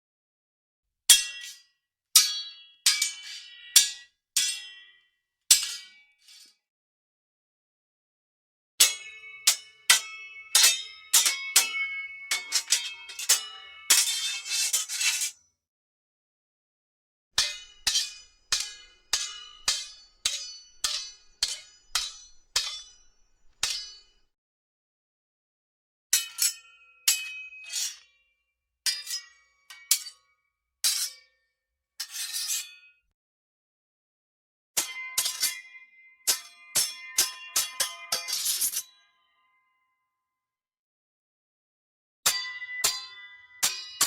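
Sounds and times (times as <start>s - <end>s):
sword blades clashing: 8.8s - 15.3s, 17.4s - 24.1s.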